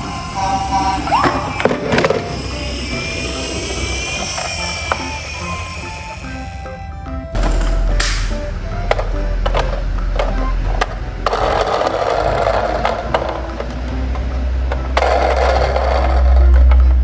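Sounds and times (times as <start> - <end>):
toy car wheels whirring: 0.0 - 6.6, 7.4 - 17.0
clicks and knocks: 7.4 - 16.9.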